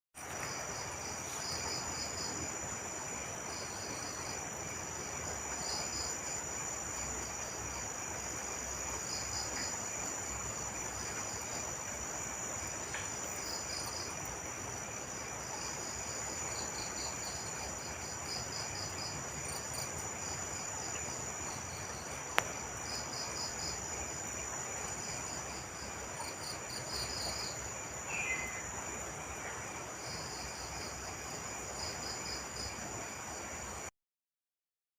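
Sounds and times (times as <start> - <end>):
crickets chirping: 0.2 - 33.9
high-pitched insect trill: 0.4 - 29.0.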